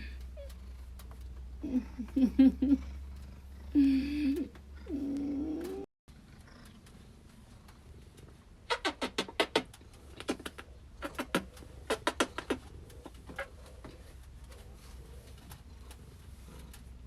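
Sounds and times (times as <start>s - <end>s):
cat purring: 0.0s - 8.7s, 9.6s - 17.0s
sharp clicking smacks: 8.7s - 13.4s.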